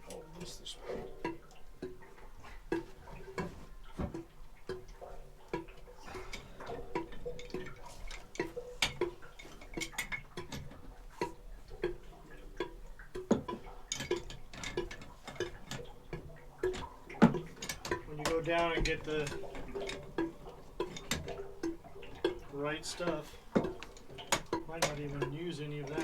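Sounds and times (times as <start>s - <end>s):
plastic pipe fittings clattering: 5.5s - 26.0s
steady regular ticking: 6.6s - 26.0s.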